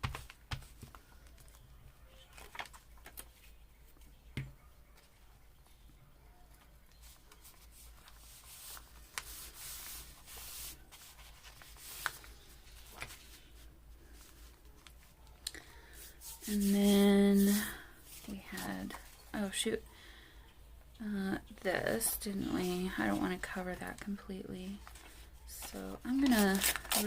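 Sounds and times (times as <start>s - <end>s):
paper rubbing and rustling: 6.9s - 15.2s, 15.9s - 19.2s, 24.8s - 27.0s.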